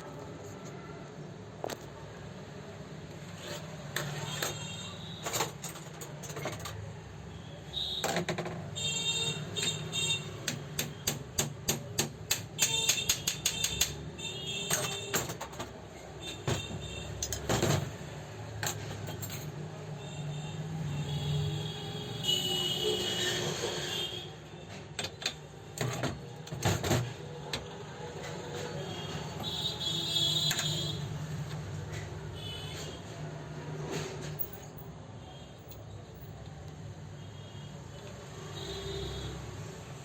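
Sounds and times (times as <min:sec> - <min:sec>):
metallic clicks and clinks: 0:18.6 - 0:19.6.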